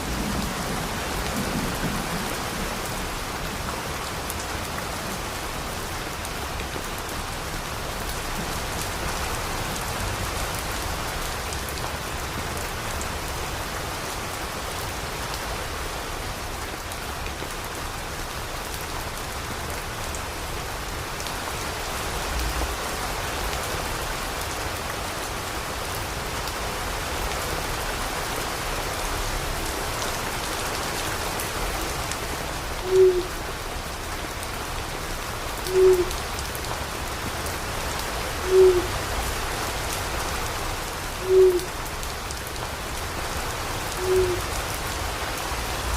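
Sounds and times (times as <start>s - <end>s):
steady rain falling: 0.0s - 45.9s
owl hoot: 32.8s - 33.4s, 35.7s - 36.2s, 38.4s - 38.9s, 41.2s - 41.7s, 44.0s - 44.5s.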